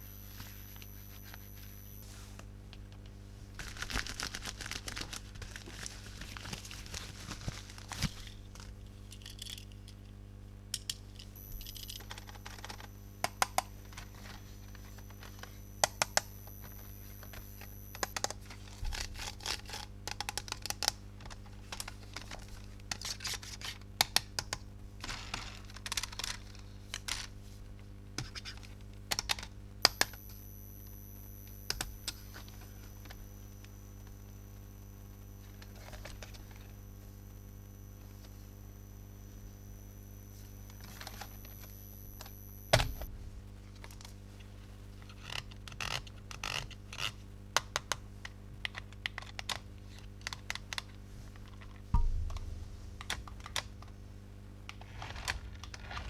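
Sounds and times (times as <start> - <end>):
low electrical hum: 0.0 - 2.1, 11.4 - 18.2, 29.8 - 43.5.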